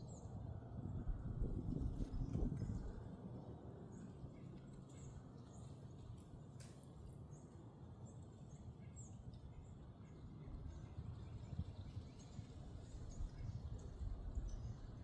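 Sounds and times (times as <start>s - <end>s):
wind buffeting microphone: 0.5s - 3.2s.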